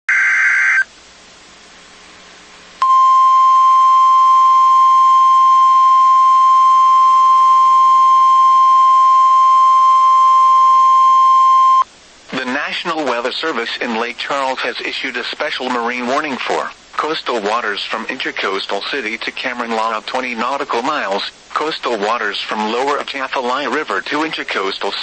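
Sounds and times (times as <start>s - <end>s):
data tones burst: 0.1s - 0.9s
steady warning alarm tone: 2.8s - 11.8s
faint hiss: 11.8s - 25.0s.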